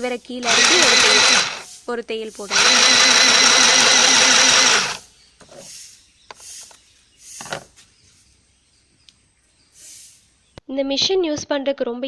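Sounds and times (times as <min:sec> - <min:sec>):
sewing machine stitching: 0:00.4 - 0:01.6, 0:02.4 - 0:05.0.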